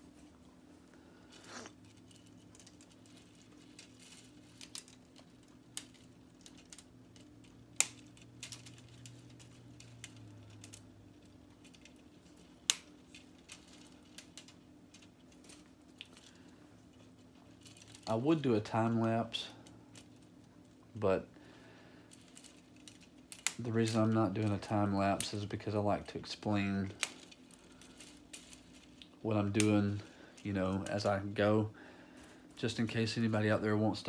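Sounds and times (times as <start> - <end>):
faint steady hum: 0.0 - 34.0
plastic connectors snapping together: 3.8 - 10.9, 11.6 - 16.3, 22.1 - 24.1.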